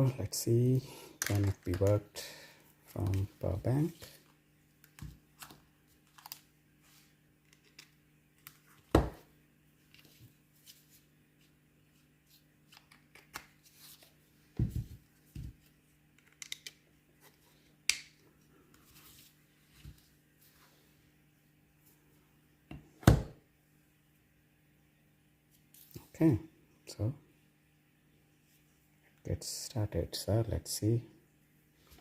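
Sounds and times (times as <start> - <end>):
faint steady hum: 0.0 - 32.0
hands handling plastic gadgets: 4.8 - 6.5.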